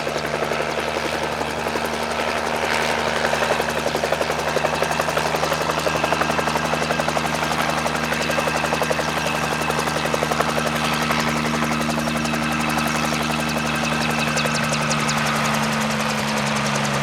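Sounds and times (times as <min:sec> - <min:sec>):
engine and turbine hum: 0:00.0 - 0:17.0
helicopter rotor chop: 0:00.0 - 0:17.0.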